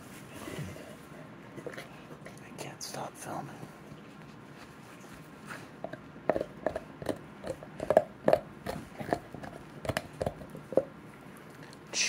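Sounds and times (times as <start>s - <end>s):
dog chewing on something hard: 5.1s - 11.9s.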